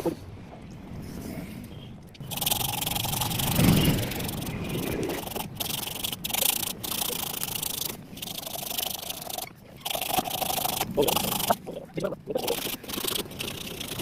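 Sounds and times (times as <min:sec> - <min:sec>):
sanding a coconut shell: 0:02.3 - 0:11.6, 0:12.4 - 0:14.0.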